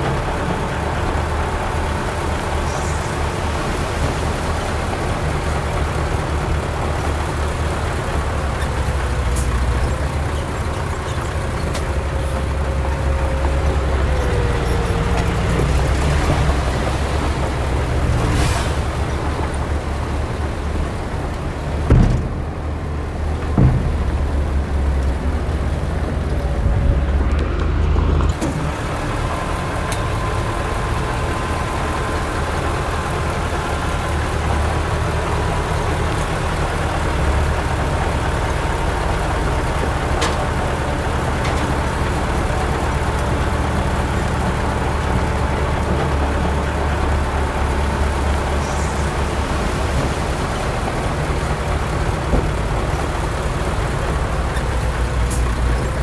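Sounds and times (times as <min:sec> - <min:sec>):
heavy diesel machinery rumbling: 0:00.0 - 0:56.0
sharp knocks: 0:21.9 - 0:22.6, 0:23.4 - 0:24.4.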